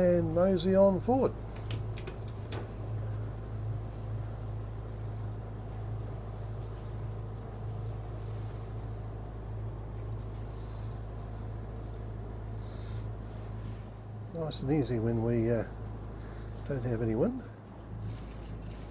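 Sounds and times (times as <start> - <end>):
boat diesel engines humming: 0.0 - 18.9.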